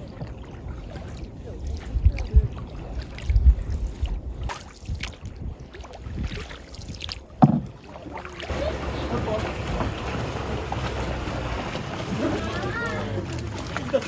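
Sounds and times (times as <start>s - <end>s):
wind buffeting microphone: 0.0s - 7.0s
paddle splashes and knocks: 0.0s - 14.0s.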